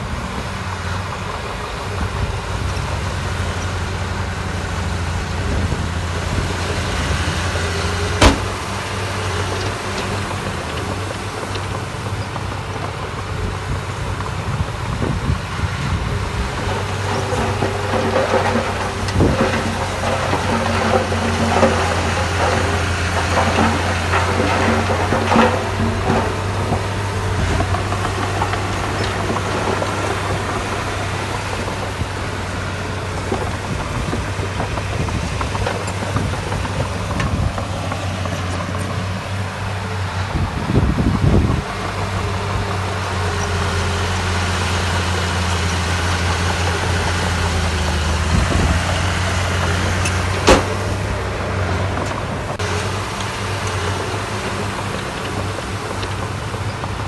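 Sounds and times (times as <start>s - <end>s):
heavy machinery diesel engine: 0.0s - 57.0s
sharp knock: 8.2s - 8.5s.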